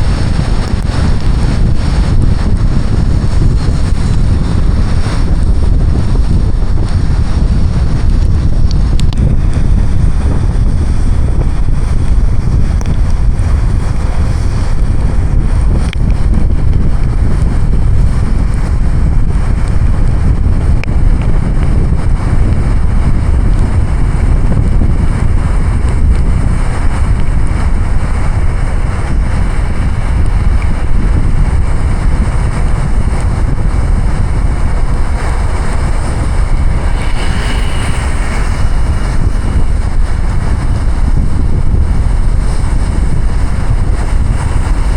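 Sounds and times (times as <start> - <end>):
tyres on wet road: 25.1 - 42.8
heavy rain rushing: 25.1 - 44.9.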